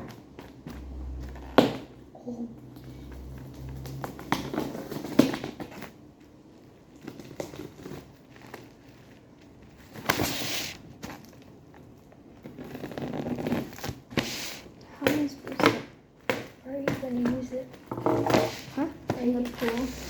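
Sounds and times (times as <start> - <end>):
packaging rasp: 7.1 - 11.5, 12.4 - 17.6, 18.2 - 20.0.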